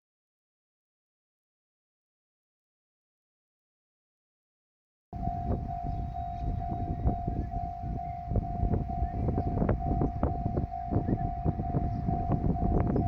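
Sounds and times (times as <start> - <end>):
level crossing alarm ringing: 5.2 - 13.0
wind rumble on microphone: 5.2 - 13.0.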